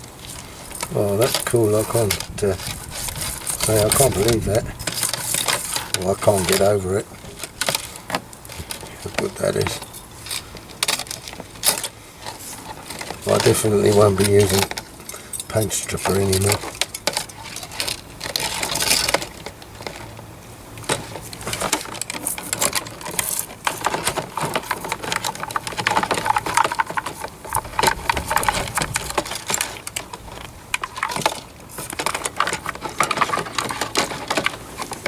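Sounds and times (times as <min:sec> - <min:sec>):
brush scrubbing metal: 0:00.4 - 0:07.5.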